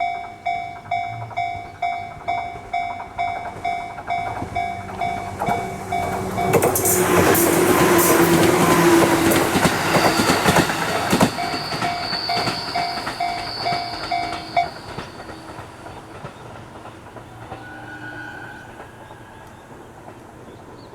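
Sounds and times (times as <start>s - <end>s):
crossing warning bell ringing: 0.0s - 16.0s
train wheels clacking over rails: 0.1s - 20.9s.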